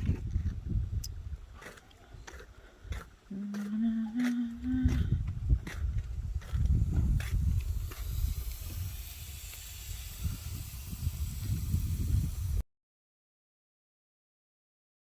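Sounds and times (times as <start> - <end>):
low rumble on microphone: 3.3 - 12.6.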